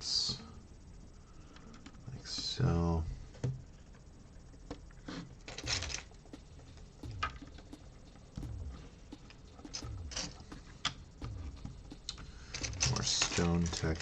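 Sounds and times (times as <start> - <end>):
soft thumps: 5.5 - 13.3.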